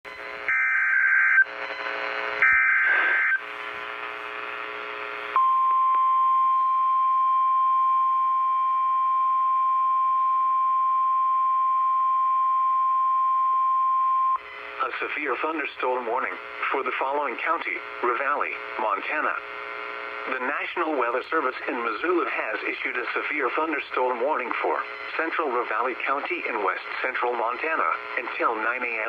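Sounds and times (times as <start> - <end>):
header data tones: 0.1 - 3.4, 5.3 - 14.5
weather radio alarm tone: 0.2 - 3.4
radio hiss: 1.5 - 5.4, 14.4 - 29.0.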